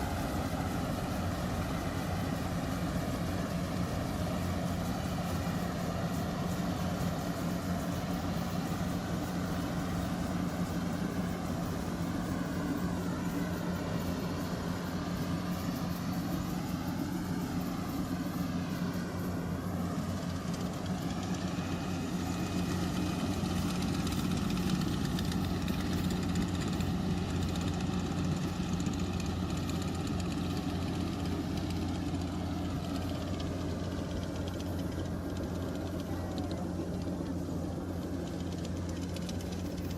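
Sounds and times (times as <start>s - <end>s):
harvesting machine engine droning: 0.0s - 39.9s.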